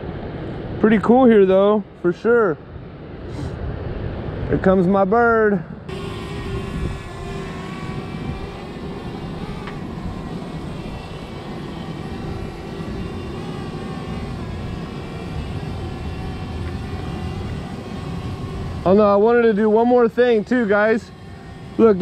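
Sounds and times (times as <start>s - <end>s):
constant low rumble: 0.0s - 22.0s
drone propellers whining: 5.8s - 22.0s.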